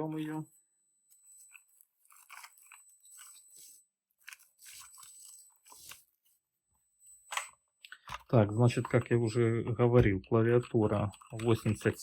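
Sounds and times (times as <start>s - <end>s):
packaging rustling and crinkling: 1.3s - 6.4s.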